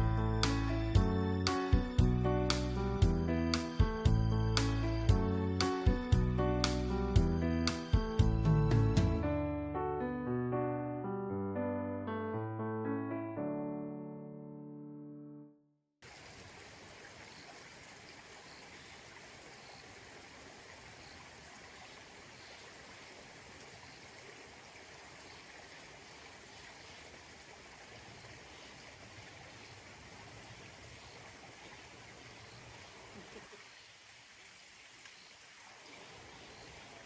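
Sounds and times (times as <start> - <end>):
piano music: 0.0 - 15.5
stream water rushing: 16.0 - 37.0.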